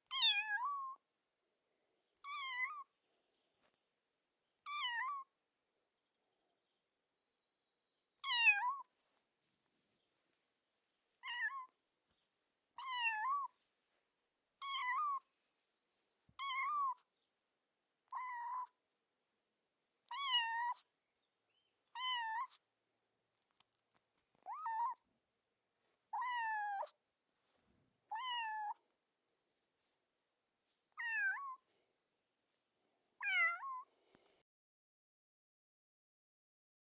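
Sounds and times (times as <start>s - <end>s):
kitten meowing: 2.2s - 2.8s, 11.2s - 11.7s, 14.6s - 15.2s, 16.4s - 17.0s, 18.1s - 18.8s, 20.1s - 20.8s, 22.0s - 22.6s, 24.4s - 25.0s, 26.2s - 26.9s, 28.1s - 28.8s, 31.0s - 31.6s, 33.2s - 33.8s.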